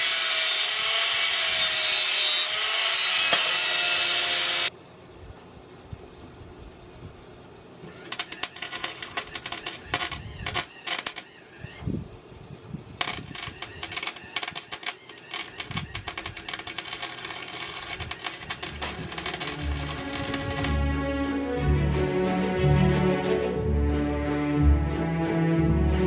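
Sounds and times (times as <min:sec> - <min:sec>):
rapid irregular clicking: 0:08.0 - 0:11.4, 0:13.0 - 0:21.0.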